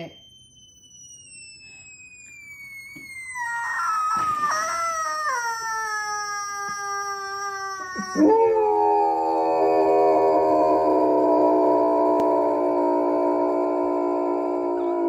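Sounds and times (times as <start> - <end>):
dog howling: 3.4 - 15.0
low sustained tone: 8.2 - 15.0.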